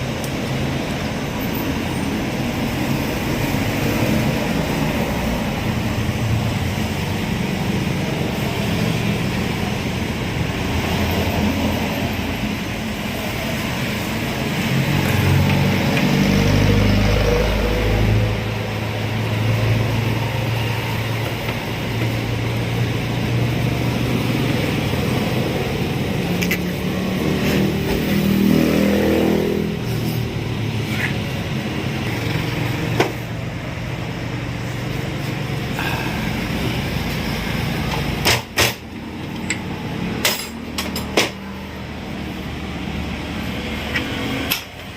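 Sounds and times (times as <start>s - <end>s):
engine idling and revving: 0.0s - 44.9s.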